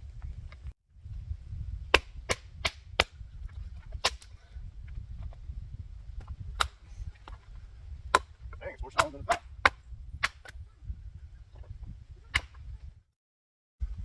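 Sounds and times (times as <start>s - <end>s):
chopping strikes on wood: 2.0s - 3.2s, 3.8s - 4.3s, 6.2s - 7.5s, 8.1s - 10.6s, 12.3s - 12.6s.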